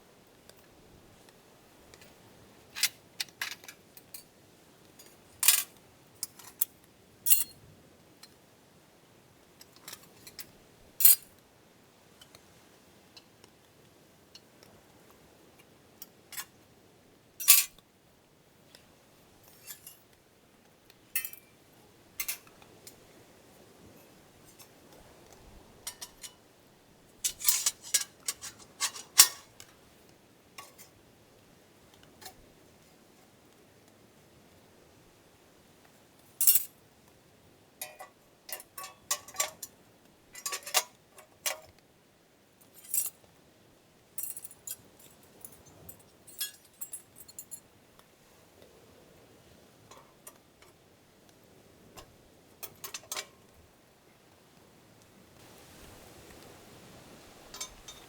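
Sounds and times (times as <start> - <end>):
cutlery and cookware clinking: 5.0 - 6.7, 7.3 - 7.6, 17.4 - 17.8, 19.5 - 20.1, 21.2 - 21.5, 22.2 - 22.9, 25.8 - 26.4, 27.2 - 29.8, 30.6 - 30.9, 36.4 - 36.7, 37.8 - 39.7, 40.4 - 41.7, 42.6 - 43.2, 44.2 - 47.6, 52.0 - 53.4, 57.5 - 58.0.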